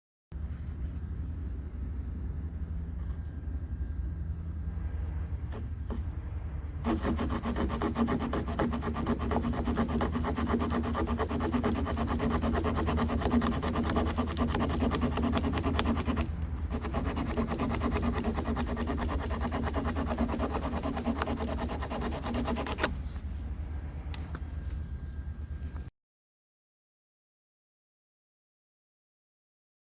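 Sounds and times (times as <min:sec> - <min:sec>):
steady low rumble: 0:00.3 - 0:25.9
hand saw cutting wood: 0:06.8 - 0:22.9.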